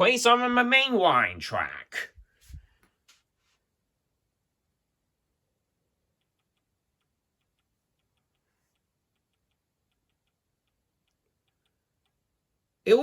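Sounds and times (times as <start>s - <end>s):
faint light ticks: 6.2s - 12.2s.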